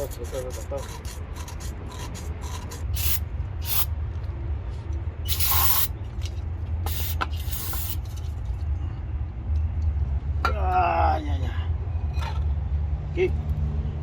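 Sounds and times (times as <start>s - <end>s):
hissing spray bursts: 3.0s - 3.9s, 5.3s - 5.9s, 6.9s - 8.0s.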